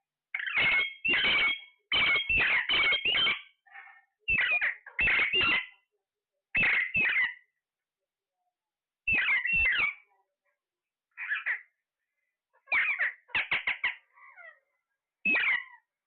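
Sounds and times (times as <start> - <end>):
parrot squawking: 0.4 - 5.8, 6.6 - 7.4, 9.1 - 10.0, 11.2 - 11.7, 12.6 - 14.6, 15.3 - 15.8.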